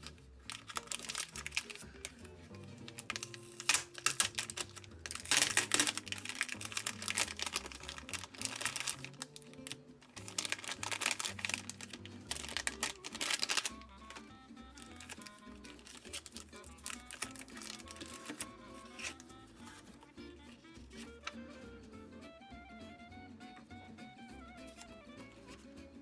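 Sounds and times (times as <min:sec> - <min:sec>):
rapid clicking and rustling: 0:00.0 - 0:02.2, 0:02.8 - 0:14.2
background music: 0:00.0 - 0:26.0.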